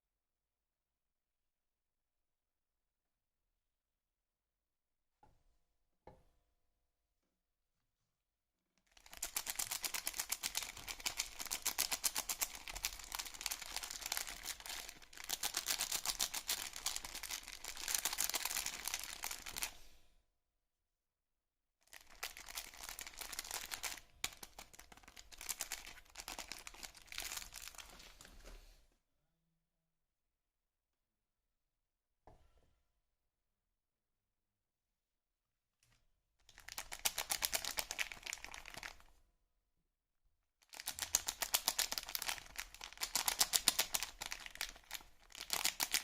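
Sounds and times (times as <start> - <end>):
wrapper crinkling: 9.0 - 19.7, 21.9 - 28.3, 36.6 - 39.0, 40.7 - 46.0.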